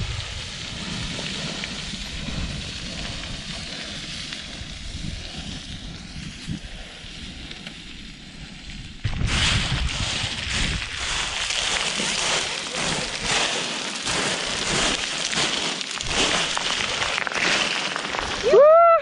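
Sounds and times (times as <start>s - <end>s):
wind buffeting microphone: 0.0s - 13.4s
boots crunching on sliding scree: 9.0s - 18.6s.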